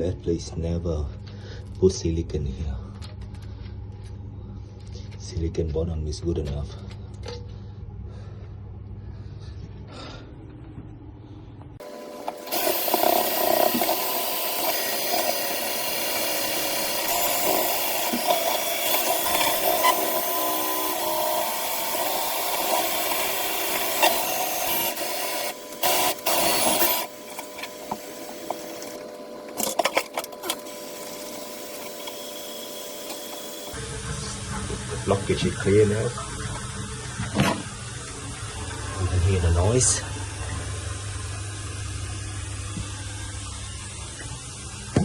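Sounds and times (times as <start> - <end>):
drain-cleaning machine motor whine: 11.8 - 37.2.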